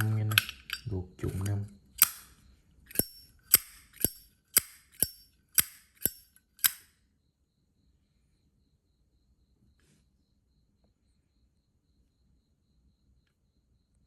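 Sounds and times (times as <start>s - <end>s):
lighter clicking with metallic ring: 0.0s - 0.9s, 2.0s - 2.3s, 2.9s - 6.9s.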